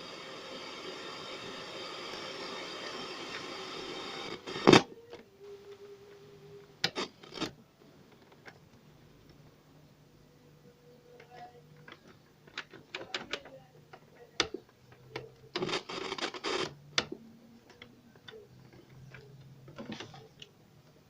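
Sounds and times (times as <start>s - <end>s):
faint low hum: 4.4s - 21.0s.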